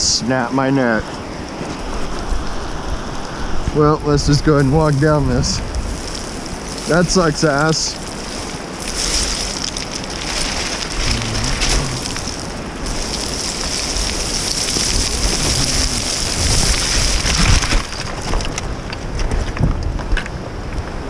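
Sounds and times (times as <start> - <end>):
boots sliding on snow: 8.2 - 17.7.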